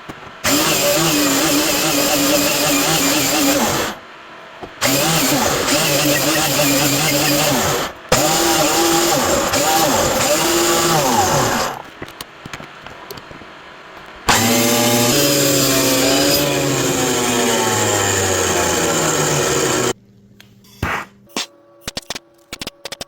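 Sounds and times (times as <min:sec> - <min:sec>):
electric power tool cutting wood: 0:00.4 - 0:04.0, 0:04.8 - 0:11.8, 0:14.3 - 0:20.0.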